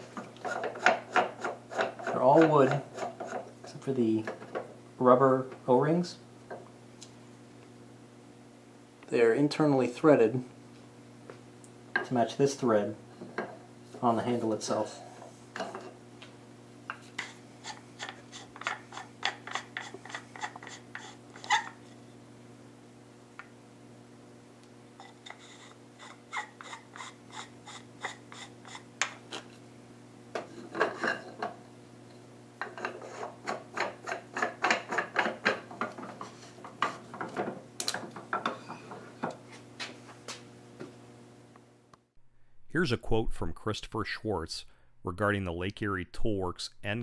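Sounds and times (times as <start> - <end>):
wood threads scraping: 25.0 - 28.8
steady low hum: 35.7 - 47.0.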